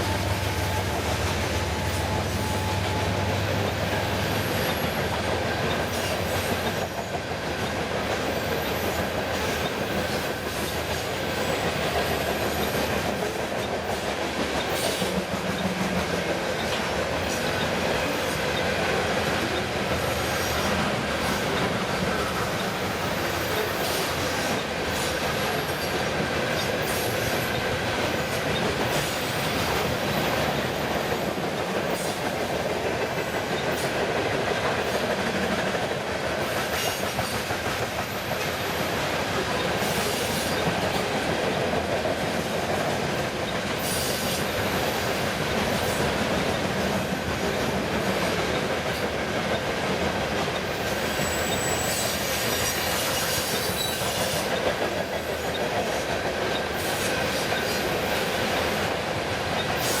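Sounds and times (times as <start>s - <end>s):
train wheels clacking over joints: 0.0s - 60.0s
high wheel squeals: 50.6s - 54.6s.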